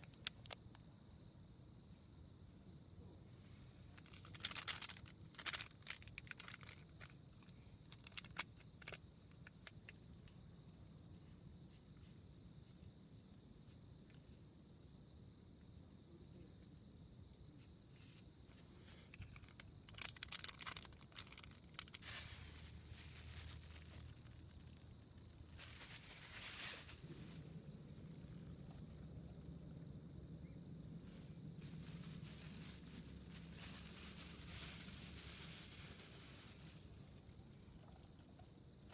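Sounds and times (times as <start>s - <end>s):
brief rustling: 19.2s - 24.5s, 25.6s - 27.5s.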